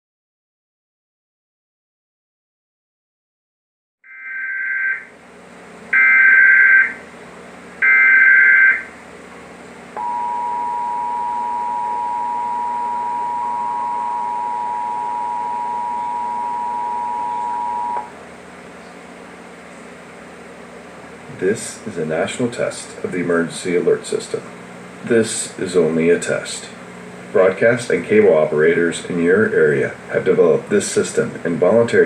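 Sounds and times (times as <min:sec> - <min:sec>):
shrill buzzy data tones: 0:04.1 - 0:05.1, 0:05.9 - 0:07.0, 0:07.8 - 0:08.9, 0:10.0 - 0:18.1
two-tone attention signal: 0:10.0 - 0:18.1.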